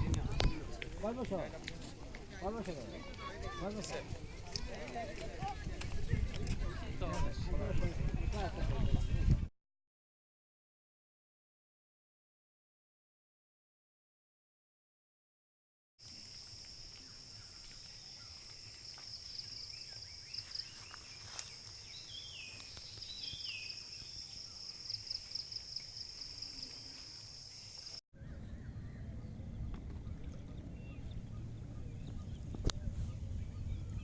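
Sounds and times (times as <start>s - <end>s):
low rumbling outdoor background: 28.2s - 34.0s.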